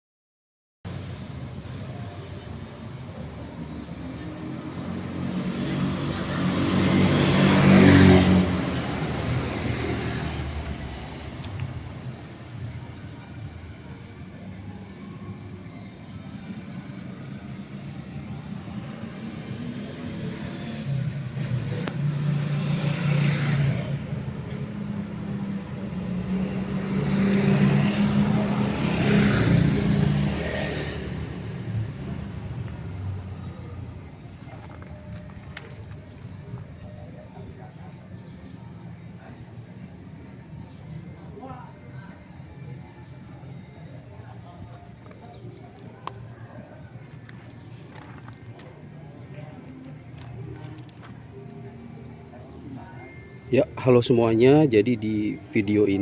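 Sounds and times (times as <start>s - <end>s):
vehicle passing by: 3.8s - 12.5s, 17.3s - 41.5s.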